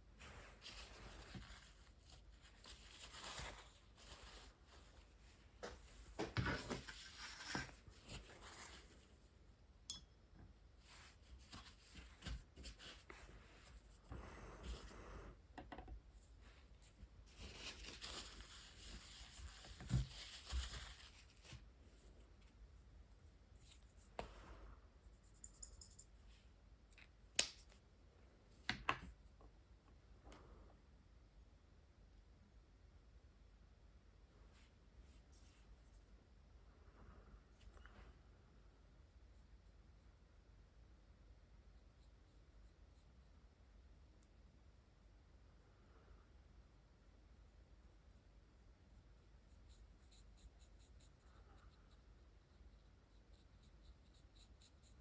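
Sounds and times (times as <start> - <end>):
marker rustling on paper: 49.2 - 55.0.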